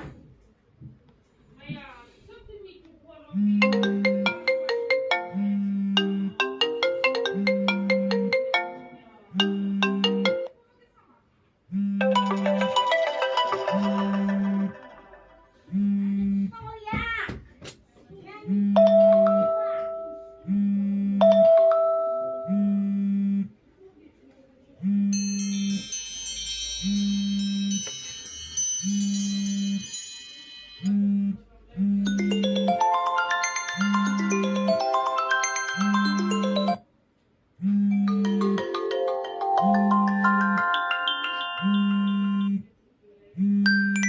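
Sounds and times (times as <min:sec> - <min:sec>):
phone ringtone tune: 0:03.6 - 0:10.5, 0:12.0 - 0:15.7, 0:18.7 - 0:20.5, 0:21.2 - 0:22.8, 0:25.1 - 0:31.0, 0:32.0 - 0:36.9, 0:37.9 - 0:42.6, 0:43.7 - 0:44.0.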